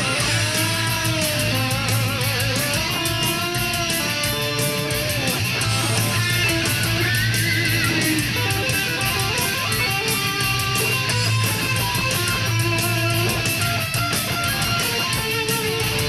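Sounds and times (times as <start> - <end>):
band backing with cymbal beat: 0.0 - 16.0
distorted electric guitar lead: 0.0 - 16.0.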